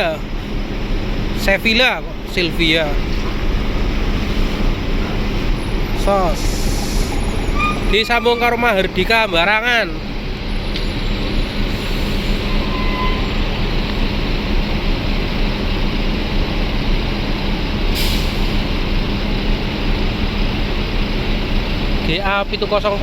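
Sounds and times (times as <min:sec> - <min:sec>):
buses passing close by: 0:00.0 - 0:23.0
low hum: 0:00.2 - 0:17.8
sharp hiss of air: 0:06.3 - 0:07.2, 0:17.9 - 0:18.7.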